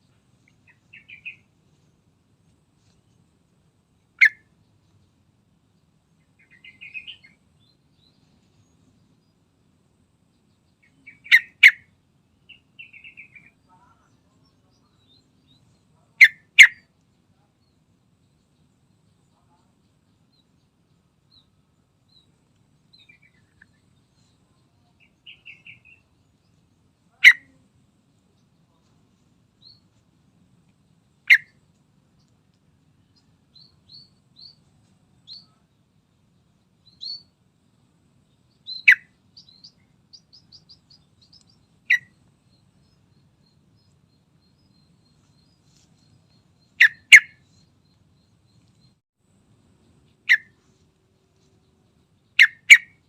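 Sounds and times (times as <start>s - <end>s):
bird sharp calls: 0.5s - 1.4s, 4.2s - 4.5s, 10.8s - 11.9s, 16.1s - 16.9s, 27.1s - 27.6s, 31.2s - 31.6s, 38.7s - 42.2s, 46.8s - 47.5s, 50.2s - 50.6s, 52.4s - 53.0s
faint high chirps: 6.3s - 9.4s, 10.4s - 30.0s, 30.6s - 37.7s, 38.3s - 53.0s.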